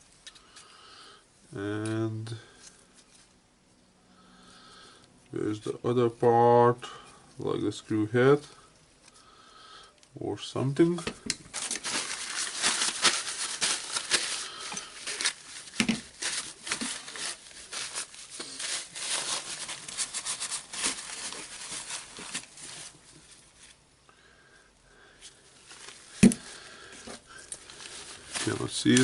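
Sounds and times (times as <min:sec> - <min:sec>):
hands sorting small parts: 0:10.9 - 0:19.8, 0:25.8 - 0:29.0.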